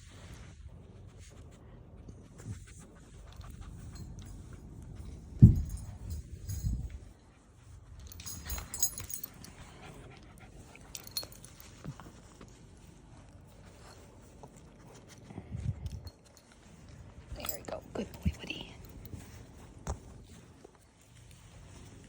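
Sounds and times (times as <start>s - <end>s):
collar tags jingling: 3.3s - 12.4s, 15.9s - 19.6s
low thump: 5.4s - 6.1s.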